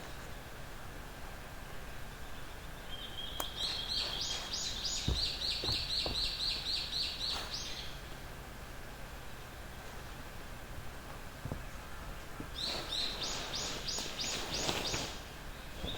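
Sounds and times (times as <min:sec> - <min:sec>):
songbird chirping: 0:01.6 - 0:15.9
dull knocks: 0:04.8 - 0:07.4, 0:11.1 - 0:12.7.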